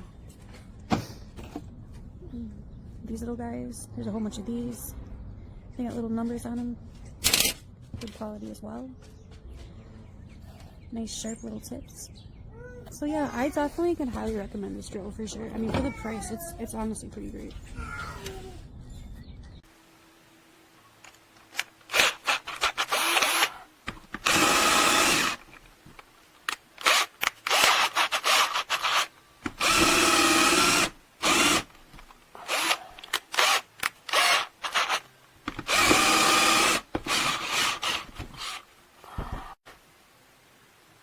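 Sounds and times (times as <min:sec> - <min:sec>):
cordless drill motor whining: 0:21.9 - 0:23.6, 0:24.2 - 0:25.4, 0:26.8 - 0:31.7, 0:32.5 - 0:38.6.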